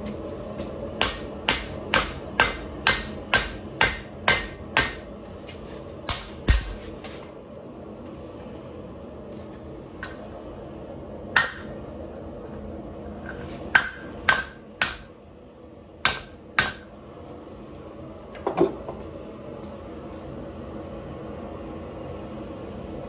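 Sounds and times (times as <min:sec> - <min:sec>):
steady background hum: 0:00.0 - 0:23.0
hammer striking steel on anvil: 0:01.0 - 0:05.3, 0:06.1 - 0:07.2, 0:11.4 - 0:12.0, 0:13.7 - 0:15.3, 0:16.0 - 0:17.0.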